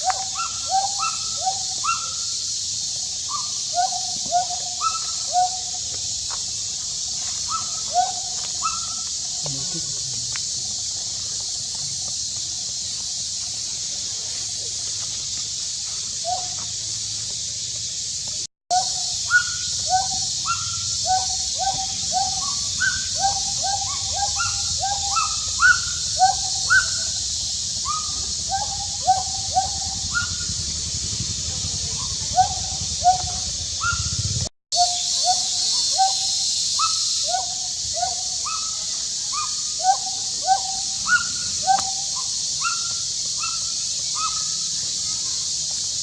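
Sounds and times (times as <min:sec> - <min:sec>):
monkey crying: 0:00.0 - 0:02.3, 0:03.3 - 0:05.8, 0:07.5 - 0:09.1, 0:18.7 - 0:31.1, 0:31.8 - 0:44.6.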